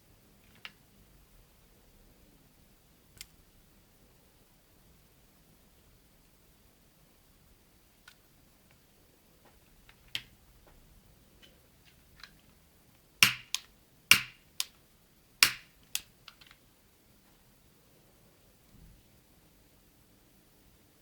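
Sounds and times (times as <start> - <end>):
hard objects clicking: 13.2 - 14.8, 15.4 - 16.6.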